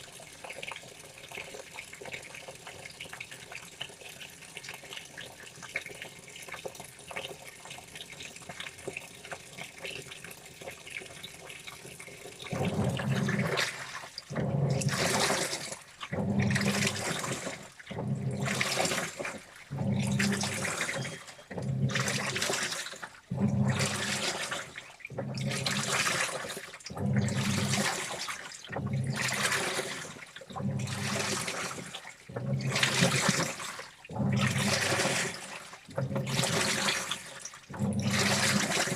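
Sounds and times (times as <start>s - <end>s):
washing machine sloshing water: 0.0s - 38.9s
washing machine motor hum: 12.5s - 38.9s.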